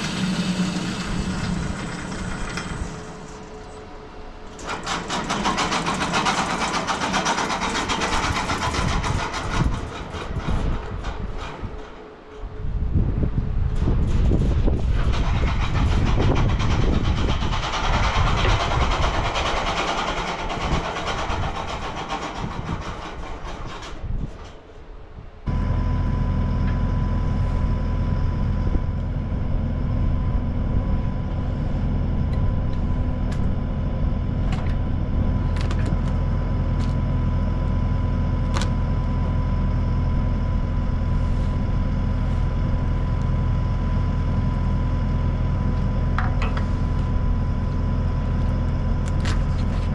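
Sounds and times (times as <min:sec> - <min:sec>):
bandsaw cutting log: 0:00.0 - 0:03.4
machine hum with whine: 0:00.0 - 0:19.1, 0:25.2 - 0:49.9.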